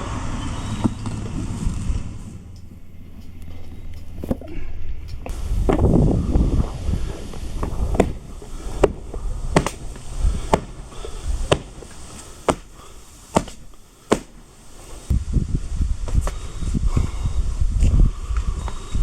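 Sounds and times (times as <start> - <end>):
sharp knocks: 7.6 - 14.5.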